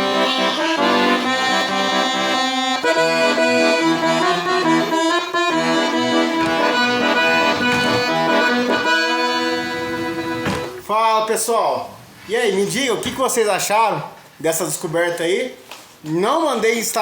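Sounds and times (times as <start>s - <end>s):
accordion playing a tune: 0.0s - 10.9s.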